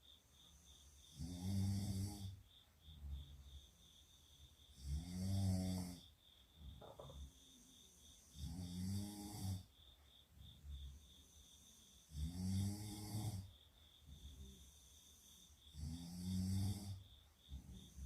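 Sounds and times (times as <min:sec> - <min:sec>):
girl snoring: 0:01.1 - 0:02.4, 0:04.8 - 0:06.1, 0:08.3 - 0:09.7, 0:12.1 - 0:13.6, 0:15.7 - 0:17.0.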